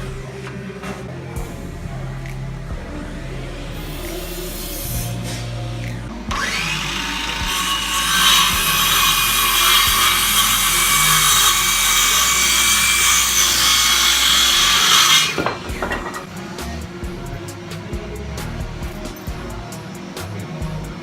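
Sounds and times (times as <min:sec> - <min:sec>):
power tool cutting wood: 0:03.7 - 0:16.3.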